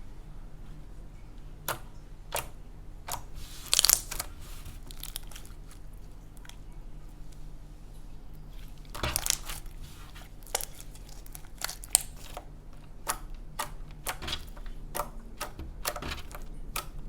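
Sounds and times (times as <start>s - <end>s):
hands squishing slime: 3.1s - 6.6s, 8.4s - 17.0s.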